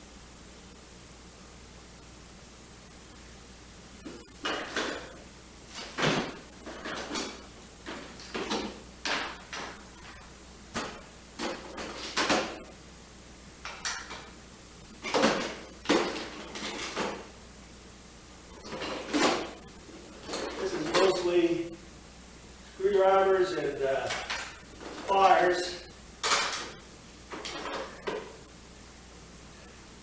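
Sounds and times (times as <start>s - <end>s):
metal tools clattering in toolbox: 5.8s - 10.2s, 26.2s - 28.3s.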